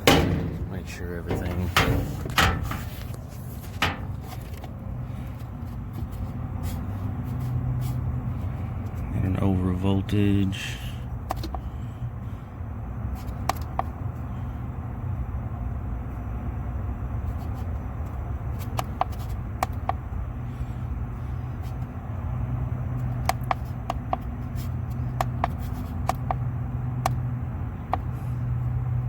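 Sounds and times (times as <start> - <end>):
rooftop unit humming: 0.0 - 29.0
sharp clicks and taps: 23.0 - 27.2.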